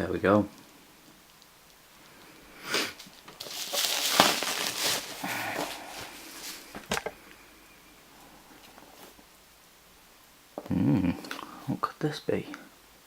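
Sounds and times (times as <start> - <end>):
packaging rustling and crinkling: 2.8 - 7.4.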